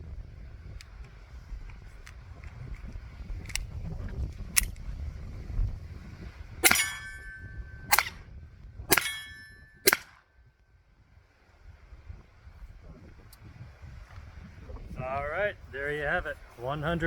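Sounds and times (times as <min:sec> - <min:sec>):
metallic ringing: 0:06.6 - 0:08.2, 0:08.9 - 0:10.1
pistol shots: 0:06.6 - 0:08.2, 0:08.9 - 0:10.2
faint gunshot cracks: 0:09.9 - 0:10.2.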